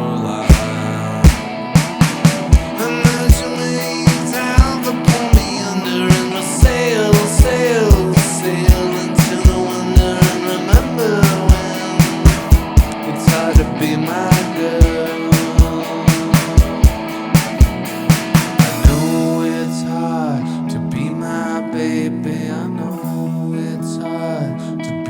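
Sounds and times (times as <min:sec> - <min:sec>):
electric guitar bending notes: 0:00.0 - 0:25.0
electronic drum kit beat: 0:00.5 - 0:19.6.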